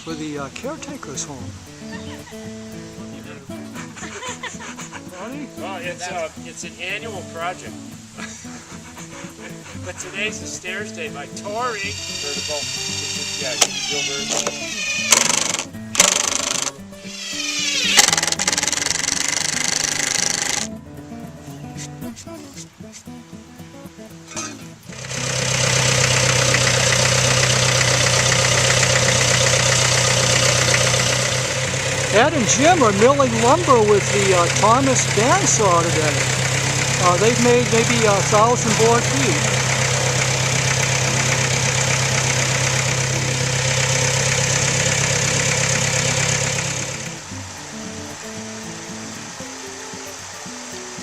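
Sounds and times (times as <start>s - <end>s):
sawmill engine drone: 11.9s - 16.7s, 18.0s - 20.7s, 24.9s - 47.6s
band blade hissing: 11.9s - 20.7s.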